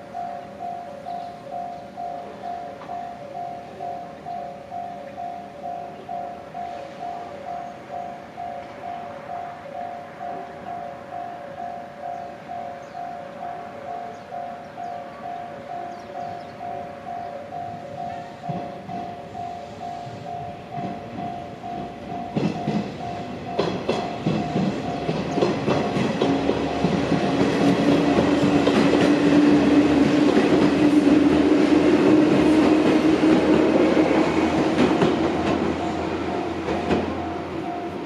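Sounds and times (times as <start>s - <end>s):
level-crossing alarm ringing: 0.0s - 38.0s
train hum: 0.0s - 38.0s
train wheels clicking over rail joints: 17.8s - 38.0s.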